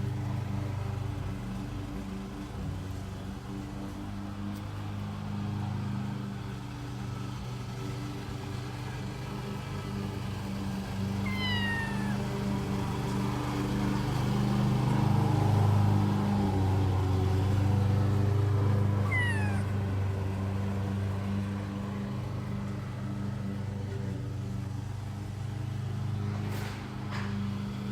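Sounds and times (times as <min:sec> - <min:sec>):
kitten meowing: 0:11.2 - 0:12.5, 0:19.0 - 0:19.8.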